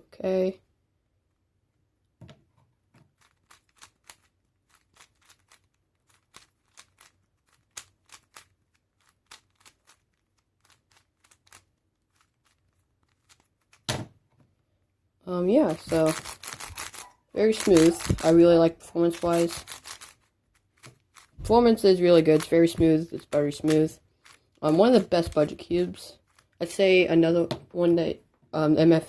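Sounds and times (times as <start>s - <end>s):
puzzle cube plastic clicks: 3.1s - 13.9s, 15.6s - 26.7s.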